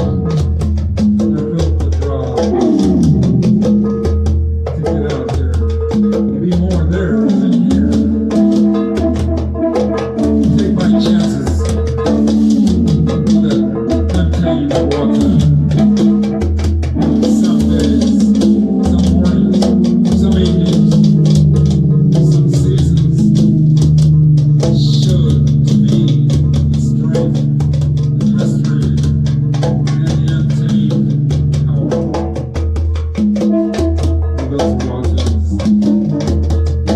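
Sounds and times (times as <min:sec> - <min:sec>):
guitar playing: 0:00.0 - 0:01.6, 0:02.4 - 0:36.9
bass guitar playing: 0:00.0 - 0:36.9
busy drum beat: 0:00.0 - 0:36.9
long held low note: 0:17.0 - 0:32.0.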